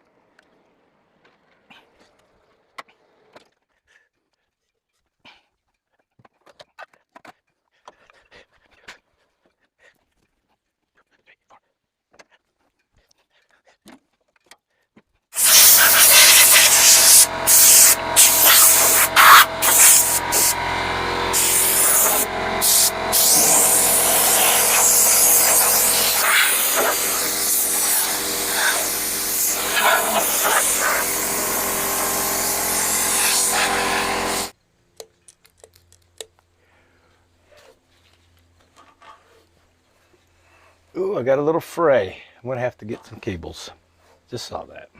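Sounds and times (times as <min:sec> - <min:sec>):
sawdust hiss: 0:15.4 - 0:34.5
bandsaw sawmill cutting log: 0:15.4 - 0:34.6.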